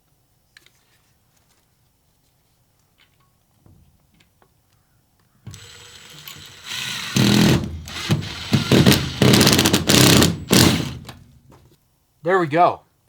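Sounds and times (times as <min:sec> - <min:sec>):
power driver motor whining: 0:05.5 - 0:11.3.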